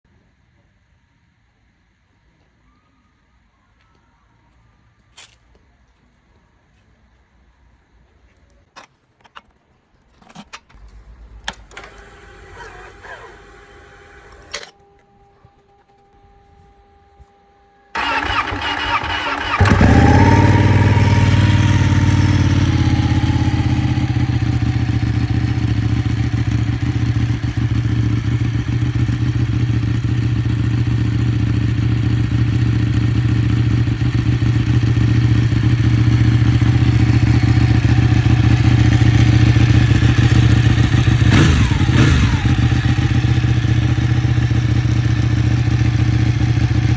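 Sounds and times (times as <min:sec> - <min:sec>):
motorcycle starter cranking: 0:10.7 - 0:14.7, 0:18.0 - 0:24.6
motorcycle engine idling: 0:10.8 - 0:14.3, 0:18.0 - 0:46.9.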